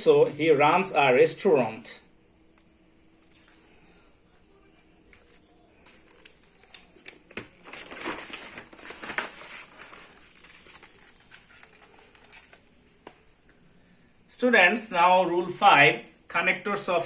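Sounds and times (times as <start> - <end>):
rustling and crinkling handling noise: 4.2 - 13.7.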